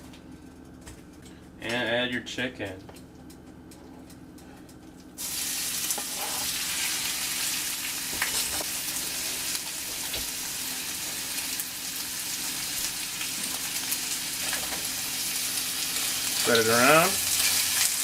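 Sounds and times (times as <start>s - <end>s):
chicken sizzling in hot oil: 5.2s - 18.0s.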